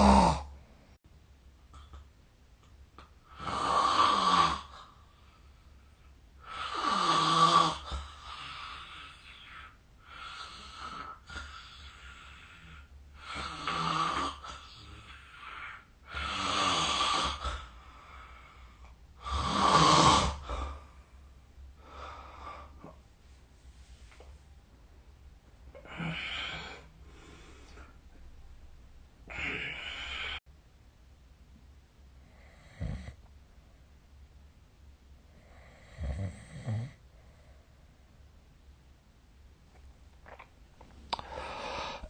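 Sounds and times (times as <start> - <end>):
person snoring: 0.0 - 0.6, 3.3 - 5.0, 6.4 - 18.3, 19.2 - 20.9, 25.8 - 27.9, 29.3 - 30.4, 35.4 - 37.0, 41.1 - 42.0
soft breathing: 20.4 - 24.8, 25.6 - 28.6, 29.3 - 30.4, 40.8 - 42.0.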